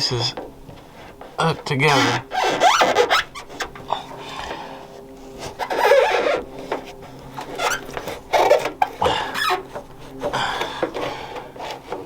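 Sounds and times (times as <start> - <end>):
plastic trim creaking and clicking: 5.4 - 12.0.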